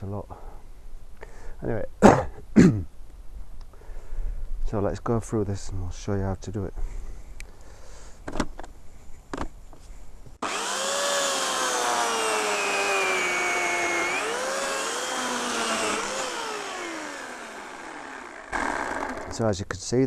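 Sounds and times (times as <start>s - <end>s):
electric chainsaw cutting log: 10.4s - 19.4s.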